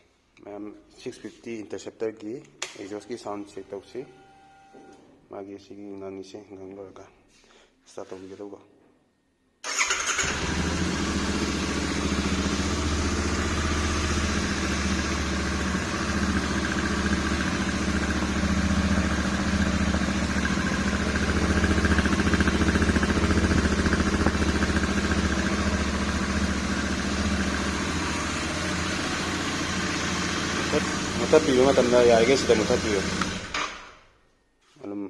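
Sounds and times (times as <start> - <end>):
motorcycle engine idling: 10.3 - 33.5.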